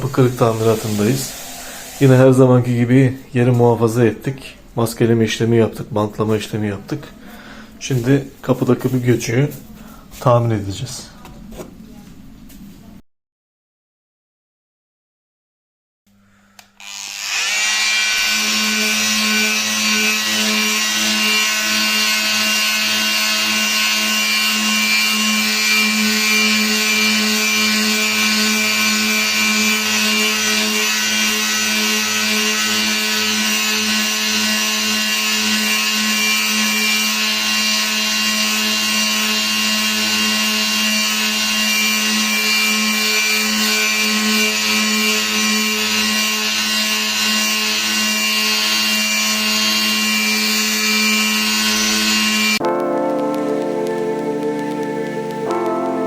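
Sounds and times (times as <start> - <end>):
electric power tool humming: 16.6 - 56.0.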